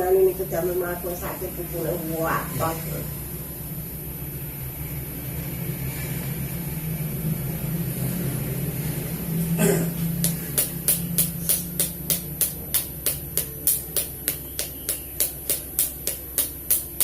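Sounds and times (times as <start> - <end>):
sharp regular taps: 10.2 - 17.0.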